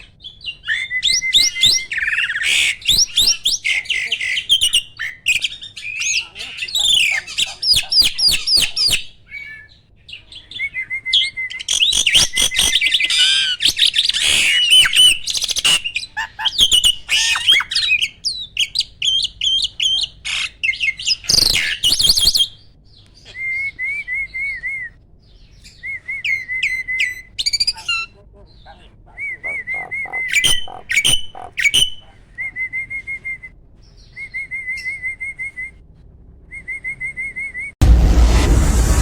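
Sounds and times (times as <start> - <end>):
starling singing: 1.4 - 9.6, 25.7 - 32.4.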